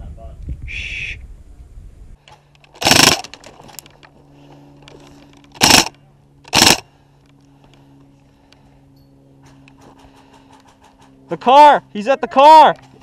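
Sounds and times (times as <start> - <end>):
airsoft rifle bursts: 2.7 - 3.5, 5.5 - 6.8.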